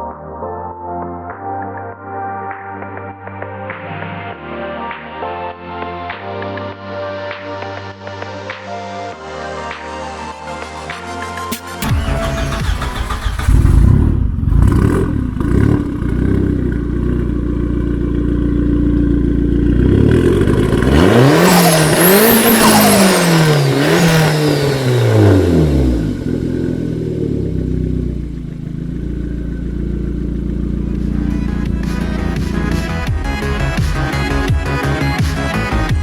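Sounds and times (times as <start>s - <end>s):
car engine revving hard: 11.8s - 17.2s, 19.6s - 28.3s, 28.9s - 36.0s.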